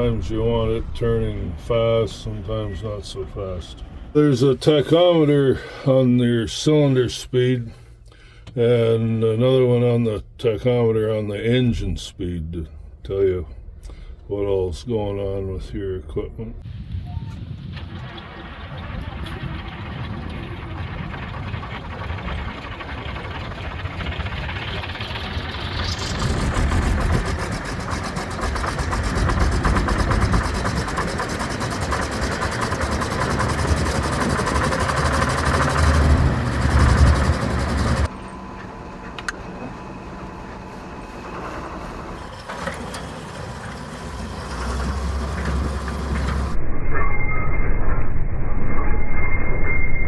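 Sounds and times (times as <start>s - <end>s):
combine harvester running: 0.0s - 5.9s, 17.0s - 46.6s.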